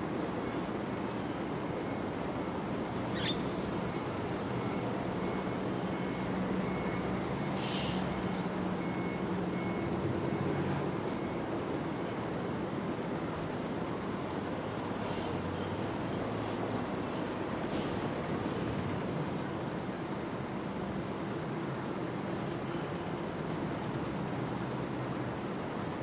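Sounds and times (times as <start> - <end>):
brief high hiss: 7.6 - 8.0.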